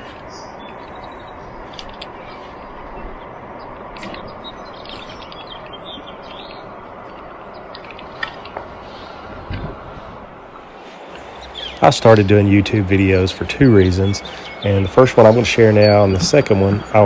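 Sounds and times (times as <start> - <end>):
steady rushing outdoor noise: 0.0 - 17.0.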